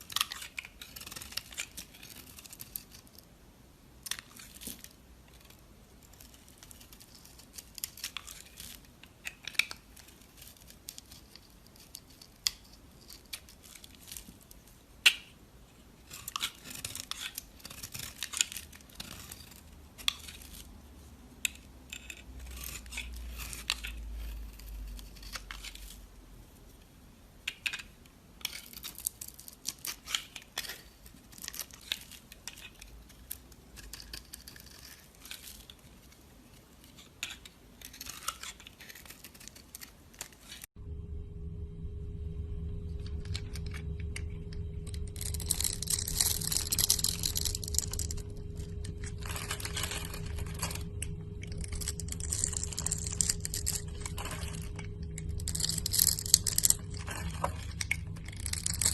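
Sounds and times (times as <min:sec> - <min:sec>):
knife cutting dry soap: 0:00.0 - 0:03.1, 0:16.0 - 0:20.7, 0:33.8 - 0:35.8, 0:37.0 - 0:40.6.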